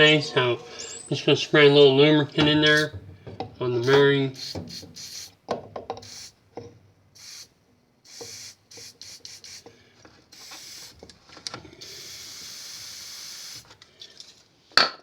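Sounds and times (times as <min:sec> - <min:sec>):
aerosol spray hissing: 0:03.8 - 0:05.4, 0:06.0 - 0:06.4, 0:07.2 - 0:09.7, 0:10.3 - 0:11.0, 0:11.8 - 0:13.7.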